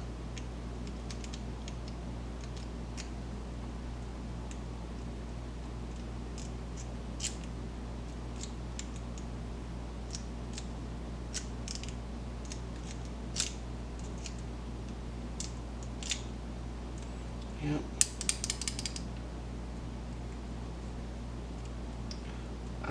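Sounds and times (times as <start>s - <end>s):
steady low hum: 0.0s - 22.9s
lock pick metallic clicks: 18.0s - 19.1s.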